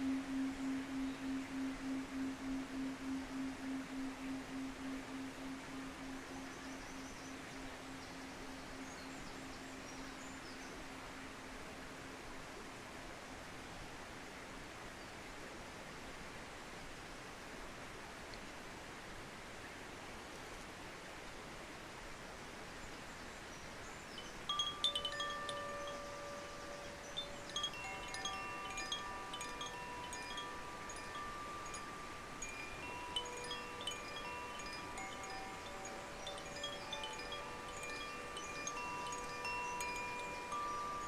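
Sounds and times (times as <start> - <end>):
chime ringing overlapping tones: 0.0 - 10.5, 24.2 - 41.0
light tinkling strikes: 0.0 - 11.1, 24.1 - 41.0
river rushing: 0.0 - 13.6, 24.2 - 41.0.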